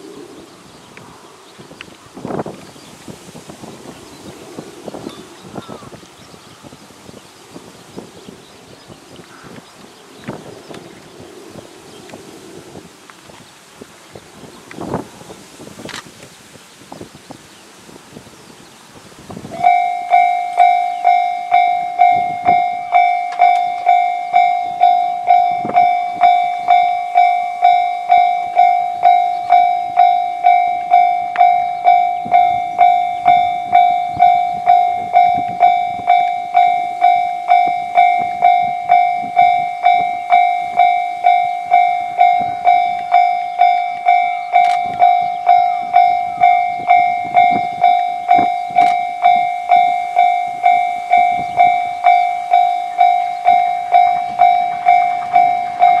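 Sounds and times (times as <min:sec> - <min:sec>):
level-crossing warning bell: 0:19.5 - 0:56.0.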